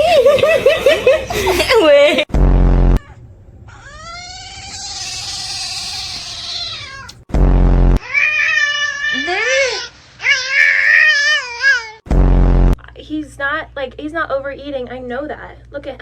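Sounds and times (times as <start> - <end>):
loud low buzz: 2.3 - 3.0, 7.3 - 8.0, 12.1 - 12.8
cat meowing: 3.0 - 7.2, 8.0 - 12.0.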